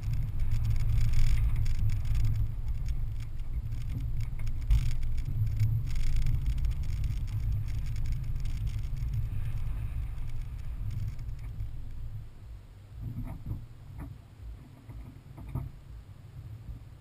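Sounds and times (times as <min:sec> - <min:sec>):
engine and tyres rumbling: 0:00.0 - 0:17.0
knocks and rattles from bumps: 0:13.0 - 0:15.8.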